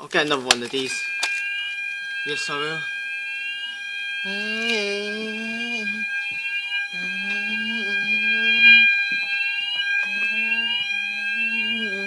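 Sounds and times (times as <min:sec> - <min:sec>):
fire alarm sounders: 0:00.0 - 0:12.0.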